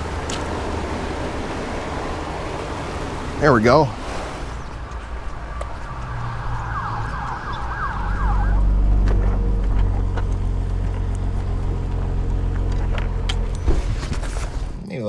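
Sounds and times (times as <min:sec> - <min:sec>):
low engine rumble: 0:00.0 - 0:14.8
emergency siren yelping: 0:04.8 - 0:10.2.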